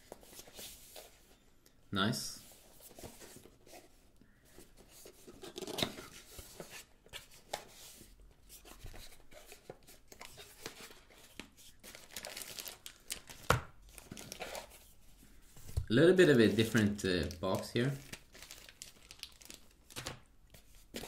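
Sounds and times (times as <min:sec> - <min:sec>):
cardboard and plastic rustling: 0:04.6 - 0:21.0.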